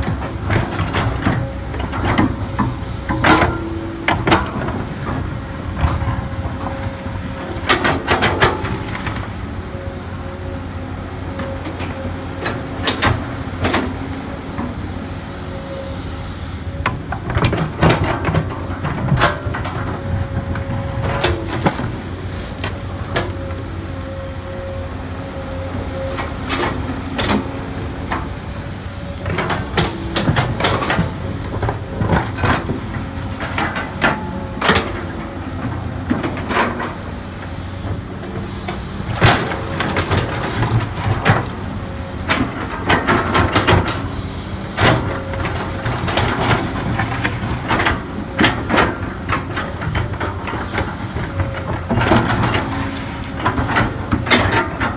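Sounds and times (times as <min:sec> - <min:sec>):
sharp clanks and knocks of bucket: 0:00.0 - 0:05.2, 0:42.3 - 0:54.9
excavator diesel engine running: 0:00.0 - 0:54.9.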